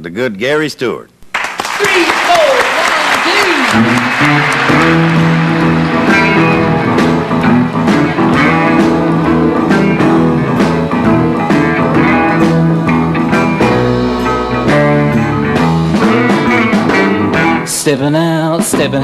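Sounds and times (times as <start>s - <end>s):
country band instrumental: 1.9s - 19.0s.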